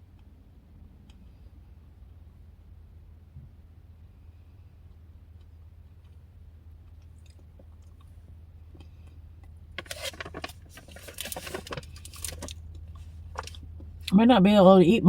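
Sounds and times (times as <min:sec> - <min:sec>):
steady low hum: 0:00.0 - 0:15.0
chocolate chewing crunch: 0:04.9 - 0:09.6.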